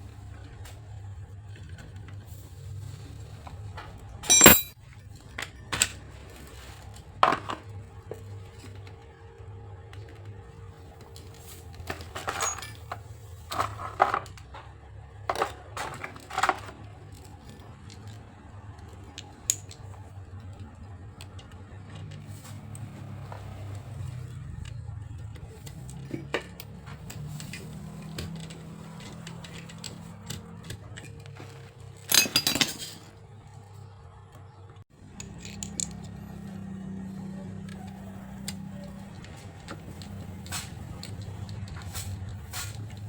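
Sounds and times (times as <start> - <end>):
metallic clinks of tools: 4.3 - 4.8.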